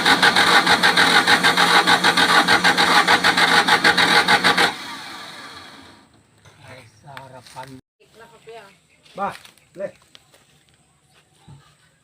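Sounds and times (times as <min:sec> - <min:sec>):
car starter cranking engine: 0:00.0 - 0:06.1.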